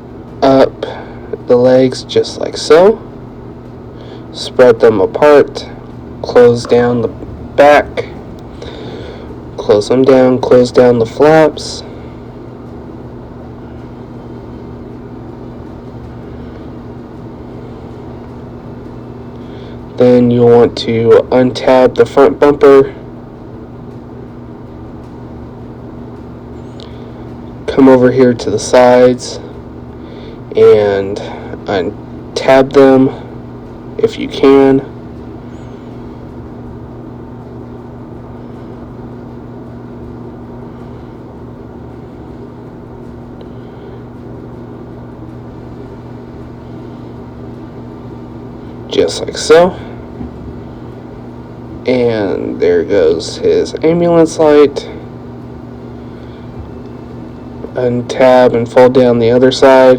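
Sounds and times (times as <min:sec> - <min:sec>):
steady background hum: 0:00.0 - 0:59.9.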